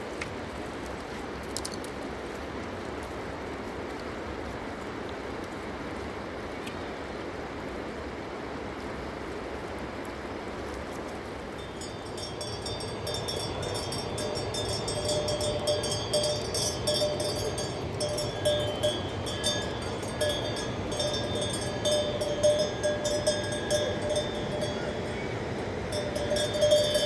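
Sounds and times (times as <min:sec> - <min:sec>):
river rushing: 0:03.2 - 0:27.0
metal bells clanking: 0:11.6 - 0:27.0.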